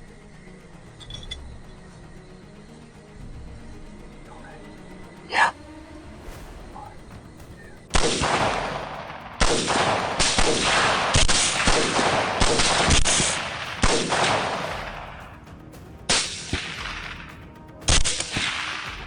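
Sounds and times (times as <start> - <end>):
echoing gunshots: 7.1 - 15.4, 16.1 - 19.0.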